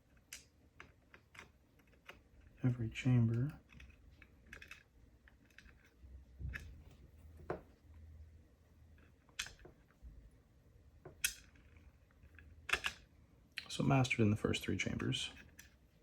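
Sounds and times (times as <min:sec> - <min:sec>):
small metal parts clicking: 0:03.3 - 0:06.7, 0:11.0 - 0:13.1.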